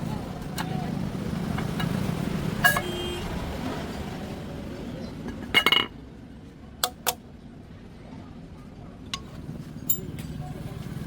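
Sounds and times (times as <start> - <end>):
metal tools clinking: 9.2 - 10.3.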